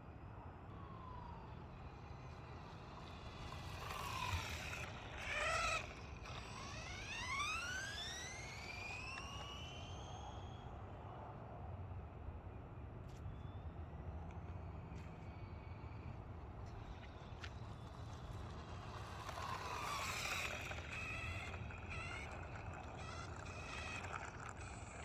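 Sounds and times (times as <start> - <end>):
electric motor whining: 0.8 - 10.2, 16.5 - 25.0.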